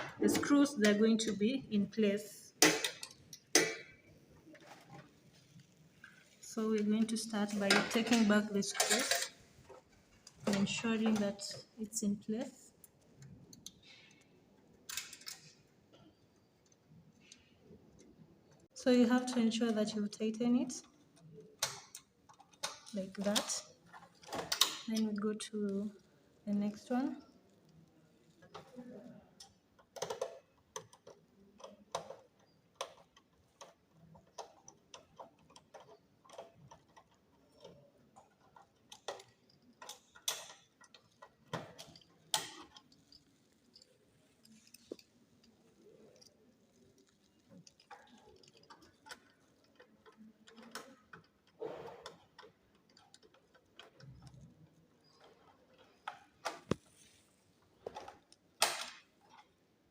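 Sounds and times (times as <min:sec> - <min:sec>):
screwdriver clicking on metal case: 0:29.4 - 0:56.8.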